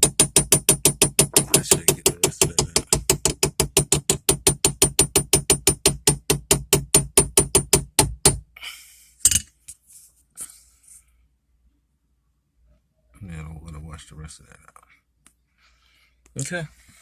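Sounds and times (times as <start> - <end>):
sharp knock: 0.0 - 8.4
fast drum machine beat: 1.0 - 5.2.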